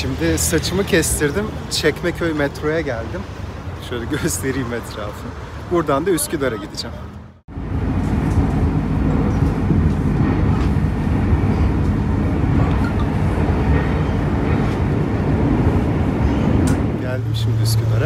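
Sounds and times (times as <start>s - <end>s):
metro train wheels on rails: 7.5s - 18.0s.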